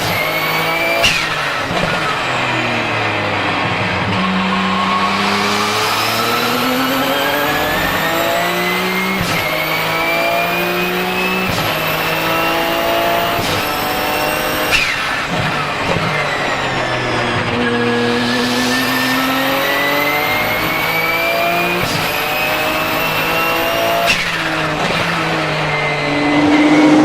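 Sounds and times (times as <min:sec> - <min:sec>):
blow-off valve release: 0:00.0 - 0:03.4, 0:04.2 - 0:26.3
gear upshifts: 0:00.0 - 0:27.0
race car engine accelerating: 0:00.0 - 0:27.0
turbo whistle: 0:04.1 - 0:27.0.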